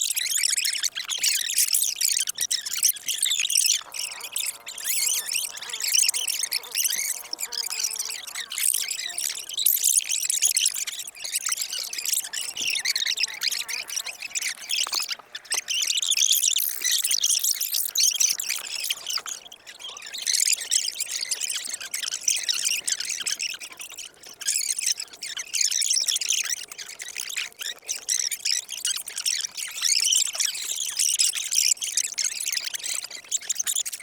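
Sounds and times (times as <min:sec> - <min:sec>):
crunching of seafood being eaten: 0:02.3 - 0:19.8.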